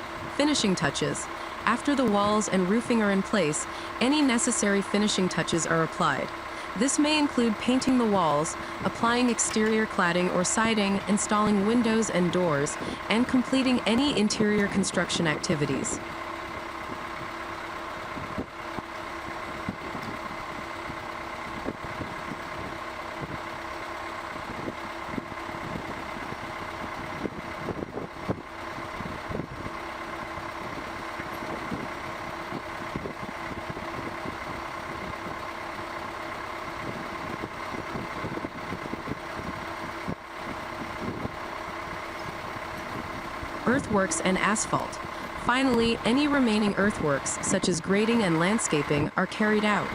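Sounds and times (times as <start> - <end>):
machine humming steadily: 0.0 - 49.9.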